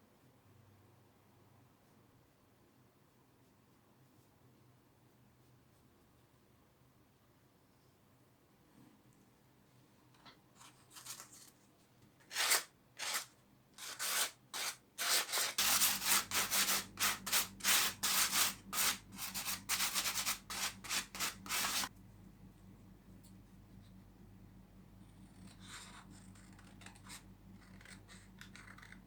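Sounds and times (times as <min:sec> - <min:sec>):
sandpaper scratching wood: 0:12.3 - 0:21.9.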